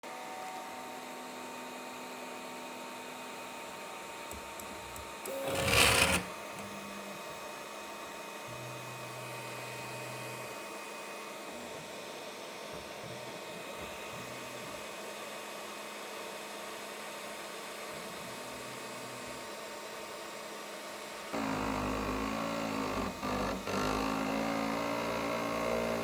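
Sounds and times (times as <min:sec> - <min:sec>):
printer stepper motors whining: 0:04.3 - 0:07.2
harsh scrape: 0:05.4 - 0:06.3.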